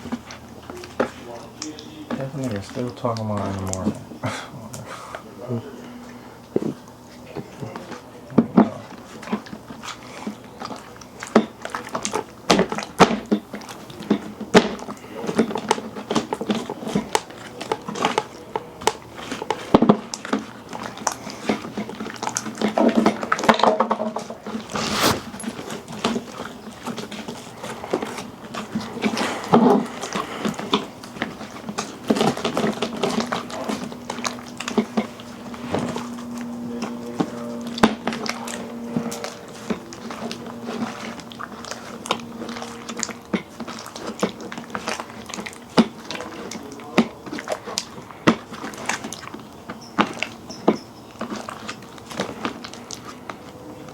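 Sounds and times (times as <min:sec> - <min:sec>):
slime squishing by hand: 0:24.7 - 0:25.4.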